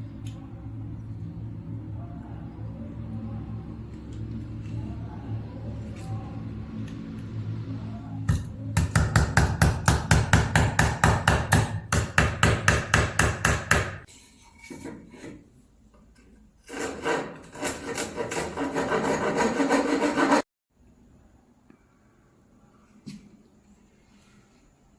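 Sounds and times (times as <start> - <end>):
hand tool rasping: 16.7 - 20.4.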